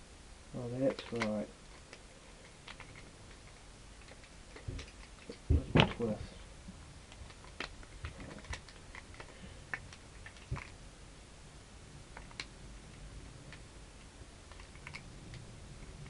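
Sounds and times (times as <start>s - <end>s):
plastic puzzle clicks and clacks: 0.8s - 6.2s, 7.2s - 10.8s, 14.5s - 16.0s.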